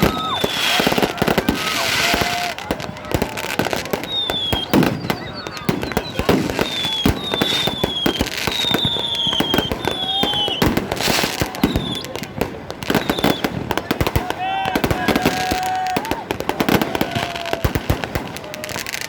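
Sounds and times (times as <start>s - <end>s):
fireworks bangs and crackles: 0.0s - 19.0s
short high falling whistles: 4.0s - 10.8s, 13.0s - 13.5s.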